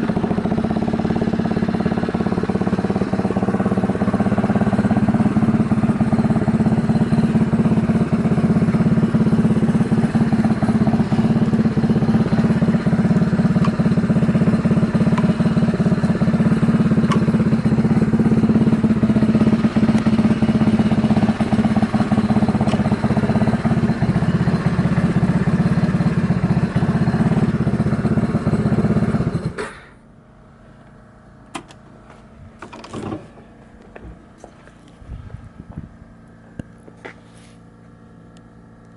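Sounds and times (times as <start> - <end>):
scooter engine idling: 0.0 - 38.9.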